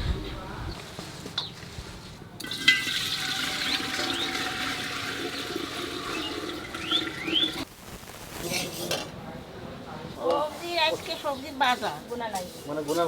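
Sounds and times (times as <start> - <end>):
water rushing: 2.6 - 7.7
bird chirps: 6.0 - 7.7.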